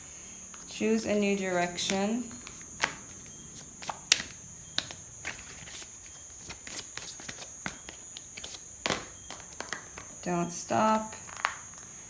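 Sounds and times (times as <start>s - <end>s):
cards clicking and tapping: 1.0s - 10.2s.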